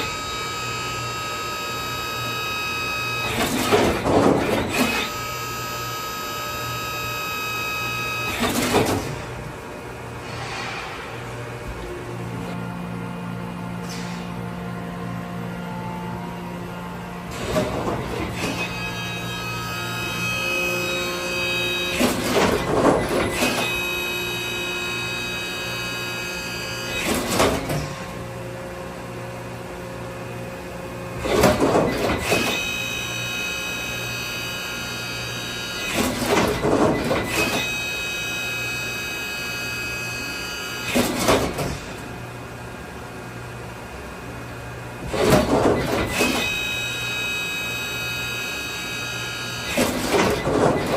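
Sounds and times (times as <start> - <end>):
high spindle whine: 0.0 - 3.8, 4.6 - 8.7, 18.1 - 27.4, 32.2 - 41.2, 45.9 - 50.9
steady machine hum: 0.0 - 50.9
short loud noisy machine burst: 10.2 - 11.4.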